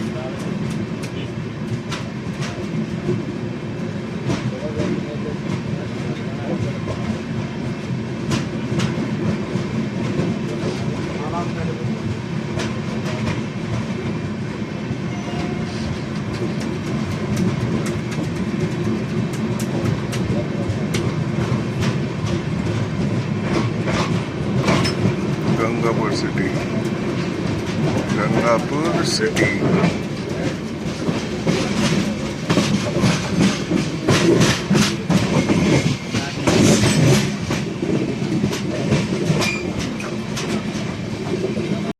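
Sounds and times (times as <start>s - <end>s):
train rumbling on rails: 0.0s - 41.9s
wheels clicking over rail joints: 16.1s - 41.6s.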